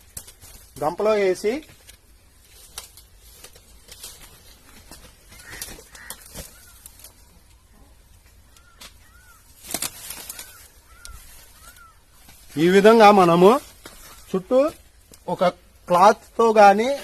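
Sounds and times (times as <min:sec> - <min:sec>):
faint short bird calls: 0:05.3 - 0:12.2.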